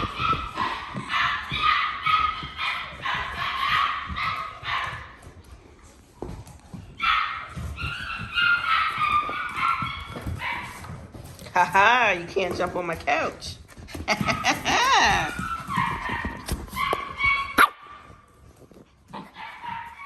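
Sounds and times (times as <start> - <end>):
puppies whining and yipping: 0.0 - 5.5, 6.3 - 11.1, 14.0 - 18.2, 19.0 - 20.0.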